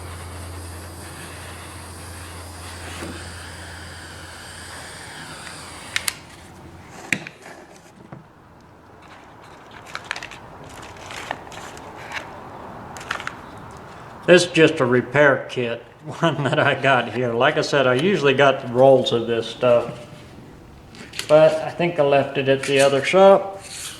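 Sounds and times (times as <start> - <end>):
torch flame hissing: 0.0 - 7.0
handling noises: 0.0 - 23.9
sharp clicks: 4.0 - 6.6.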